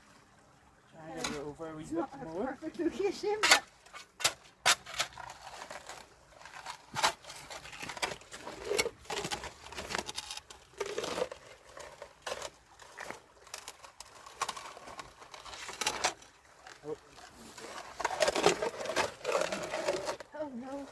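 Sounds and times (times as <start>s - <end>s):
shovel digging in wet mud: 3.4s - 16.3s, 17.2s - 20.3s.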